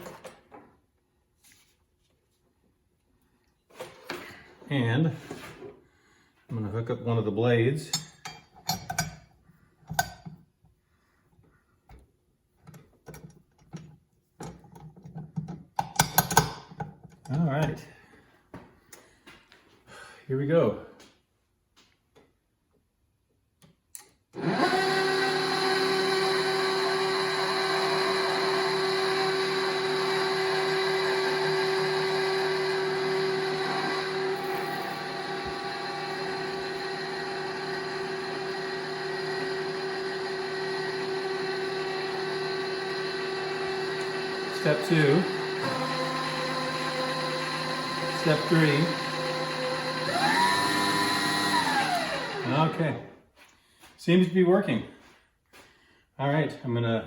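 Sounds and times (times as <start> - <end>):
stand mixer motor humming: 24.4 - 52.8.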